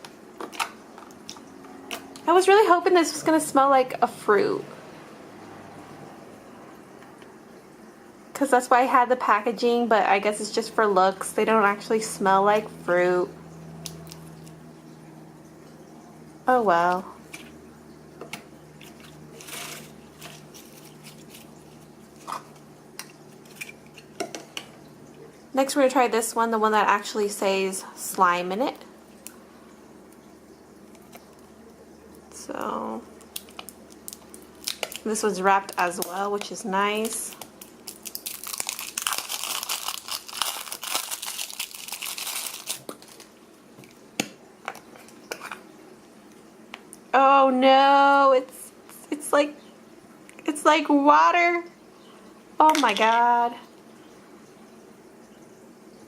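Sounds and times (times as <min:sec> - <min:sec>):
plastic wrapping crinkling and tearing: 0:18.9 - 0:22.6, 0:33.3 - 0:43.4.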